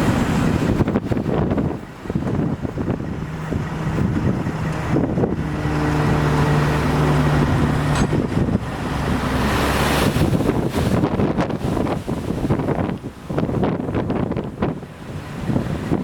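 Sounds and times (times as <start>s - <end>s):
heavy vehicle engine drone: 0.0s - 12.4s
wind buffeting microphone: 0.0s - 16.0s.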